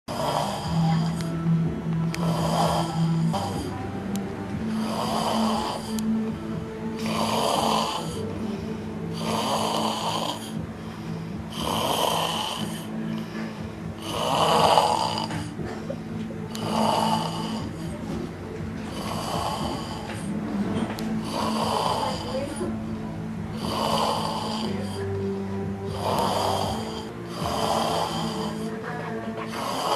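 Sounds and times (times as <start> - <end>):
person snoring loudly: 0.1 - 1.4, 2.1 - 4.0, 4.7 - 6.2, 6.9 - 15.9, 16.5 - 18.1, 18.9 - 20.4, 21.2 - 22.7, 23.5 - 25.2, 25.8 - 28.8, 29.5 - 29.9.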